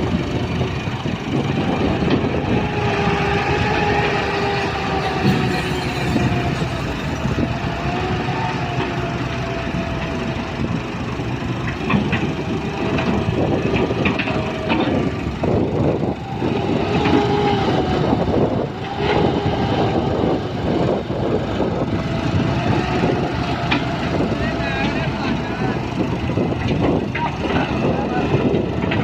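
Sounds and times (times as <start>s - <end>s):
heavy diesel machinery engines: 0.0s - 29.0s
sharp metallic clanks: 4.6s - 7.2s.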